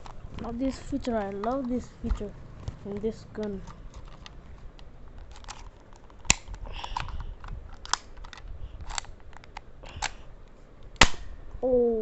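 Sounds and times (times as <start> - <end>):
plastic pistol clicks: 2.6 - 10.2, 10.9 - 11.4.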